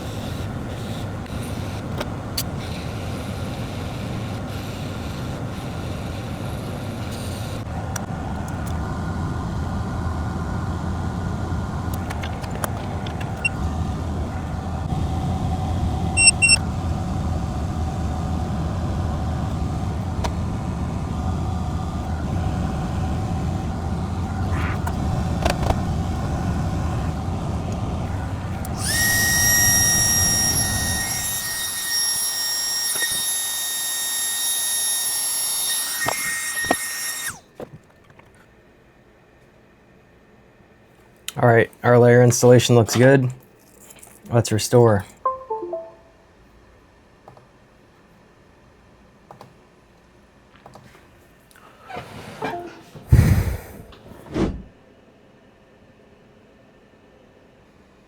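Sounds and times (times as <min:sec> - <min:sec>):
hot air station rushing air: 0:00.0 - 0:37.4, 0:52.9 - 0:54.7
short electronic beeps: 0:16.2 - 0:16.6
high electronic tone: 0:45.3 - 0:46.2.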